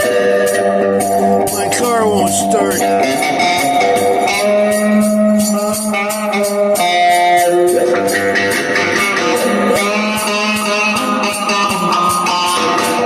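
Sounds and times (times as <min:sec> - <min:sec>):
person singing: 0:01.5 - 0:03.1.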